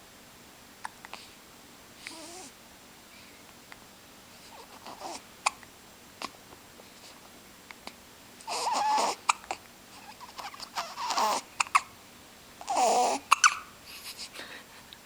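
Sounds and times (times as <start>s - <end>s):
baby whimpering: 4.5s - 5.2s, 8.5s - 11.9s, 12.6s - 14.2s
baby hiccuping: 10.2s - 11.9s, 12.7s - 13.7s.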